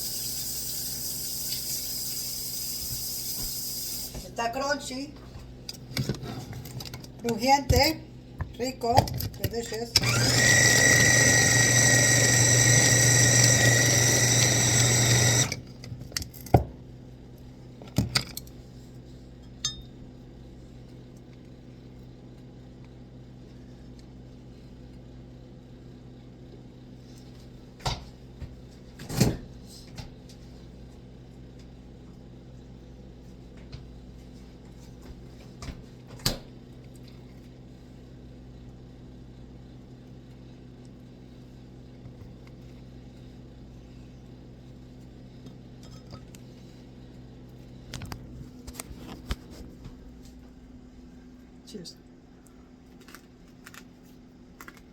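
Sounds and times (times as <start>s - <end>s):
blender motor whining: 10.0s - 15.7s.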